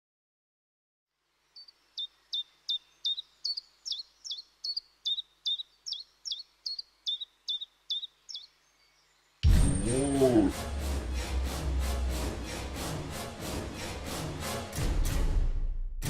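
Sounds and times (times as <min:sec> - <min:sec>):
bird chirping high notes: 0:01.6 - 0:10.5.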